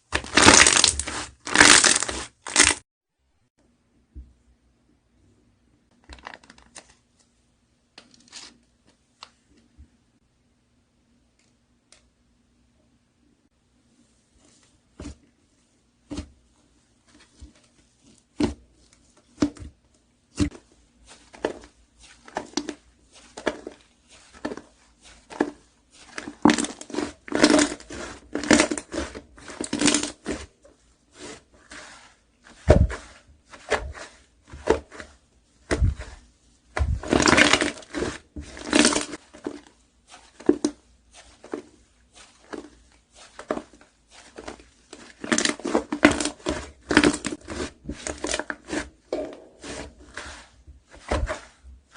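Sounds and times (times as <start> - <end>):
slime popping and crackling: 0.1 - 2.8, 26.2 - 30.4.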